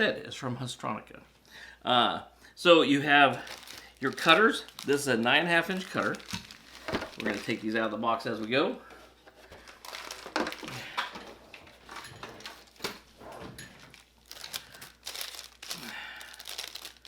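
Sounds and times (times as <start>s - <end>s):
packaging crinkling and rustling: 3.2s - 8.7s, 9.4s - 17.0s.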